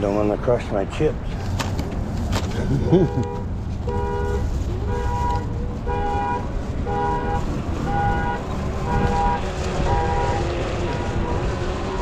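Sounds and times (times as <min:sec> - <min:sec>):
traffic rumble: 0:00.0 - 0:12.0
wind: 0:00.0 - 0:12.0.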